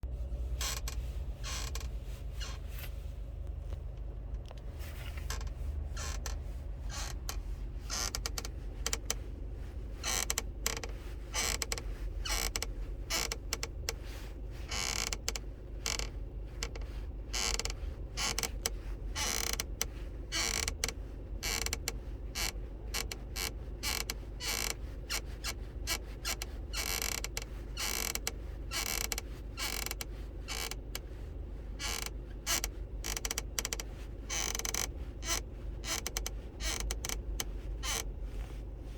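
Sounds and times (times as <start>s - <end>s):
low rumble: 0.0s - 20.3s, 34.9s - 38.9s.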